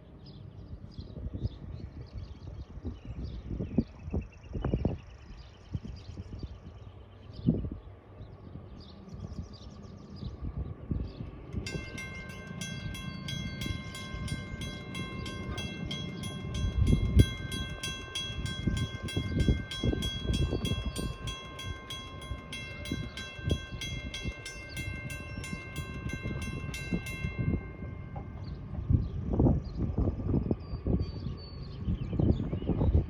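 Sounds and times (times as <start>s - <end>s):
low rumbling gusts: 10.3s - 33.0s
mechanical crossing bell ringing: 11.5s - 29.1s.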